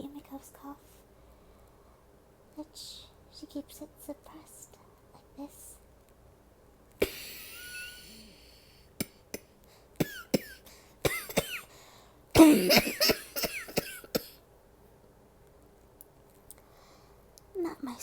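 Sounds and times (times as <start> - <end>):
woman coughing: 9.4 - 11.7, 12.4 - 14.4.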